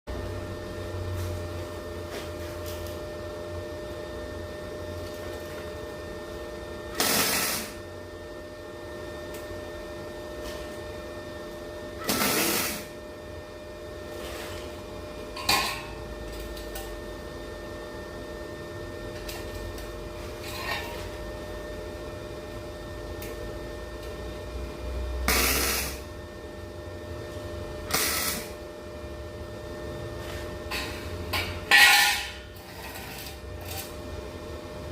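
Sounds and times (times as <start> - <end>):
welding machine hum: 0.1 - 34.9
welder sputtering: 6.9 - 7.8, 12.0 - 12.9, 25.3 - 26.1, 27.9 - 28.6.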